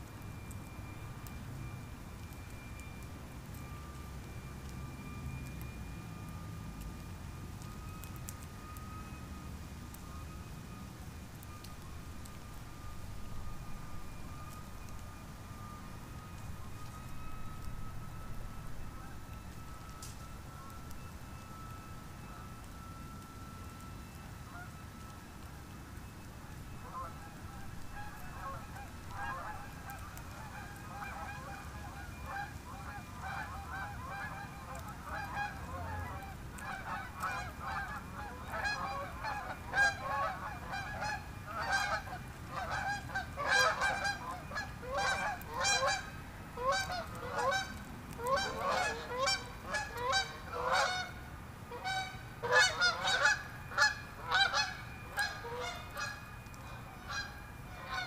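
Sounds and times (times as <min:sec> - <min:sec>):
birds honking: 0:26.8 - 0:58.0.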